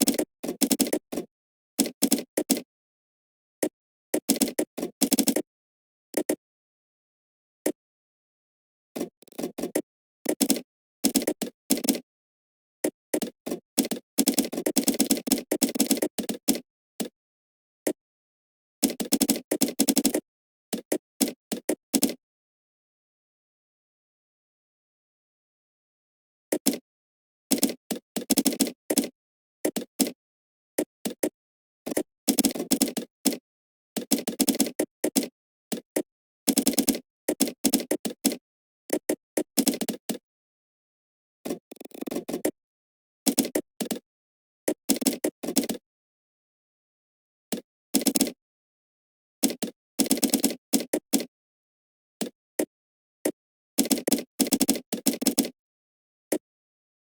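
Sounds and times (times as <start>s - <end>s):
computer keyboard typing: 0.0s - 1.0s, 18.8s - 20.2s, 31.9s - 33.4s, 34.0s - 40.2s, 49.4s - 51.3s, 53.2s - 55.5s
typing on computer keyboard: 0.0s - 1.2s, 3.6s - 5.4s, 6.2s - 6.4s, 9.3s - 12.0s, 12.8s - 17.1s, 18.8s - 22.2s, 27.5s - 30.2s, 30.8s - 33.4s, 34.0s - 40.2s, 43.3s - 44.0s, 44.7s - 45.8s, 47.5s - 48.4s, 49.4s - 51.3s, 52.2s - 55.6s.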